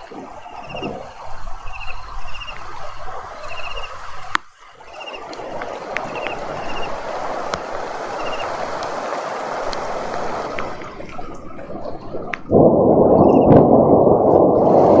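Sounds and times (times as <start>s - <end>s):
sharp drips: 0.0s - 9.0s, 9.6s - 14.9s
steady rain: 0.0s - 11.3s.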